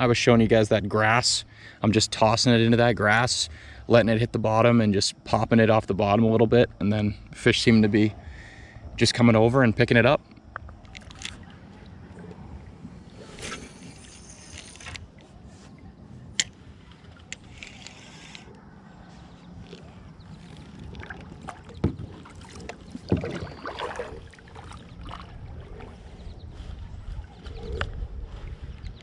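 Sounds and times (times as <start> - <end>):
low rumble of wind and water: 0.0 - 29.0
brief rustling hiss: 13.2 - 15.7.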